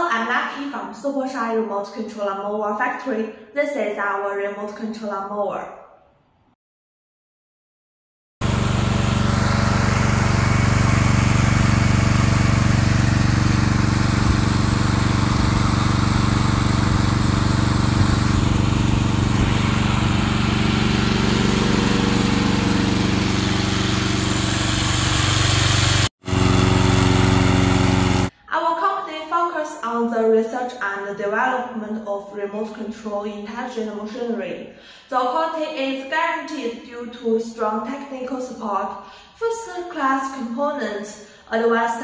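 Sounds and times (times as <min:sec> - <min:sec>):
mower engine running: 0:08.4 - 0:28.3.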